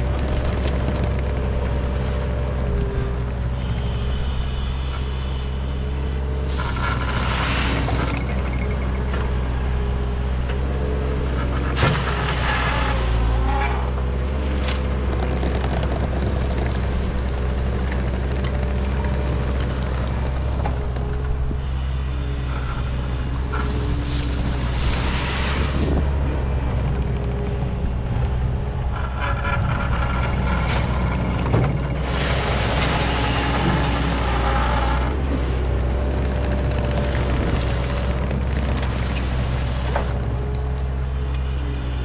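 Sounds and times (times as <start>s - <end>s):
skid steer engine running: 0.0s - 42.0s
scraping rushing noise: 16.1s - 26.2s.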